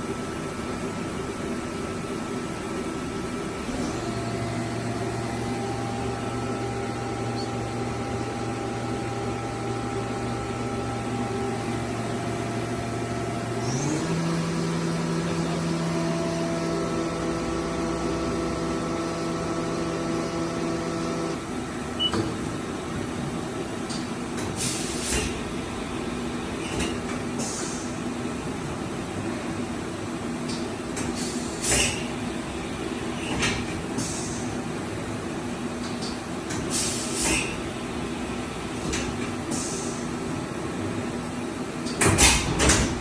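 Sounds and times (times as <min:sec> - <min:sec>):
machining center motor whine: 0:00.1 - 0:23.9.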